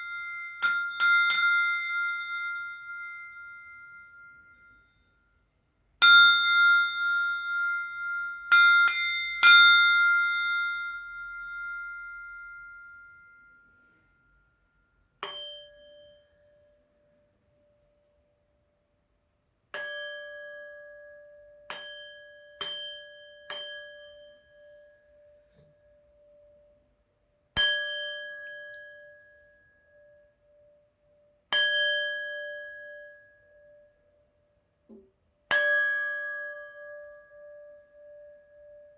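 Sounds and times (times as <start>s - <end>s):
crystal glasses ringing: 0.0s - 5.3s, 6.1s - 16.8s.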